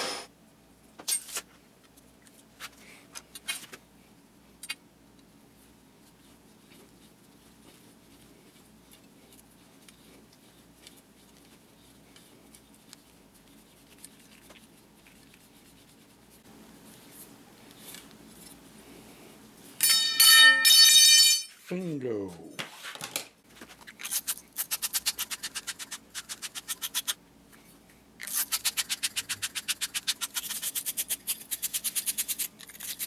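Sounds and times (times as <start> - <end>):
low steady hum: 0.3 - 22.7.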